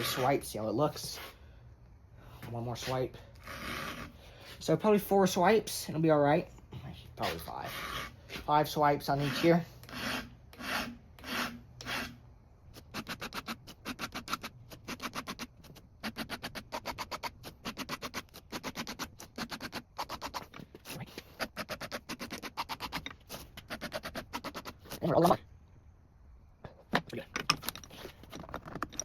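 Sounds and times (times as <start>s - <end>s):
file rasping on chainsaw chain: 3.4s - 4.2s, 7.2s - 8.5s, 9.1s - 12.2s, 12.8s - 20.5s, 21.3s - 25.0s.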